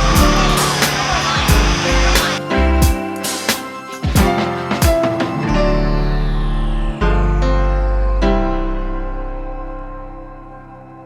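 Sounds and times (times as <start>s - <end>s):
held chord with low bass: 0.0s - 3.2s, 4.1s - 11.0s
high sweep falling in pitch: 0.0s - 3.6s.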